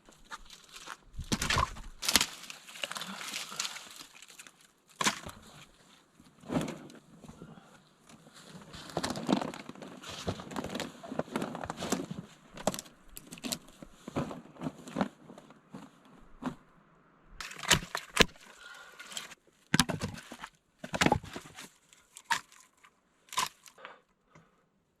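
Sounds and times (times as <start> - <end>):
wood cracking: 0.0 - 5.7, 8.8 - 13.9, 17.4 - 23.9.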